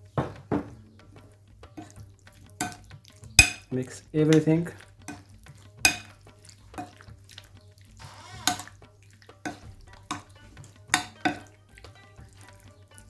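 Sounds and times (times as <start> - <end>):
utensil knocking against bowl: 0.0 - 7.3, 8.4 - 13.0
wet stirring in a bowl: 0.0 - 13.0.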